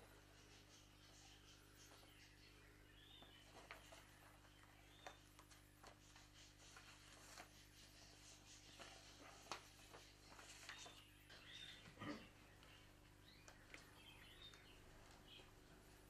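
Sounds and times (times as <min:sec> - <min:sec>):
faint high chirps: 0:07.8 - 0:16.0.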